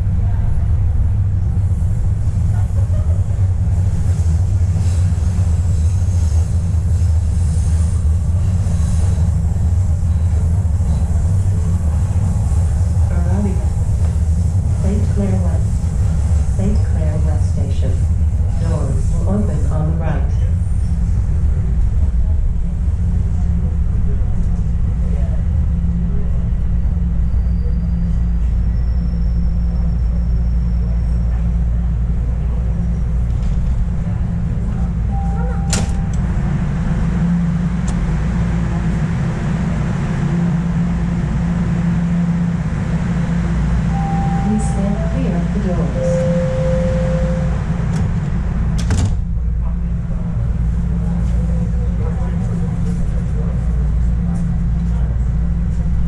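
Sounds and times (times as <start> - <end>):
subway train rumbling: 0.0 - 56.0
faint high whine: 43.8 - 47.8.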